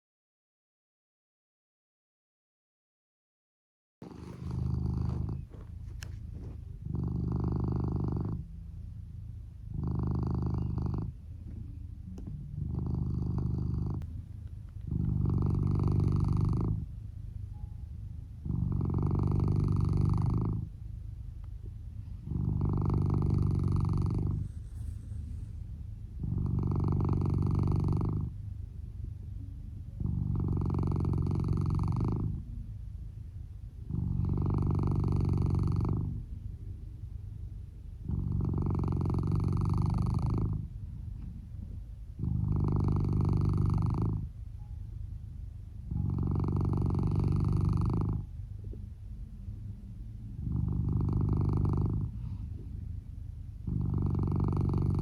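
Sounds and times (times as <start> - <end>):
cat snoring: 4.0 - 14.1, 14.8 - 20.8, 21.6 - 28.4, 30.0 - 32.5, 33.8 - 36.8, 37.9 - 41.3, 42.1 - 44.8, 45.8 - 48.8, 50.3 - 55.0.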